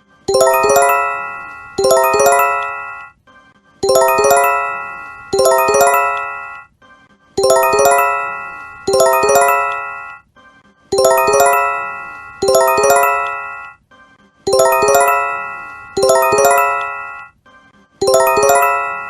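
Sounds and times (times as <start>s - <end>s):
rising bell-like alert chime: 0.3s - 3.1s, 3.8s - 6.6s, 7.4s - 10.2s, 11.0s - 13.8s, 14.5s - 17.3s, 18.0s - 19.0s.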